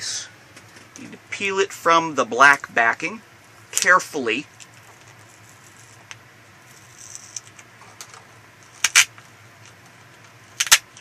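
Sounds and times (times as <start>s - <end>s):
faint scratches and ticks: 4.5s - 7.6s
sharp loud crackle: 8.8s - 9.2s, 10.6s - 11.0s.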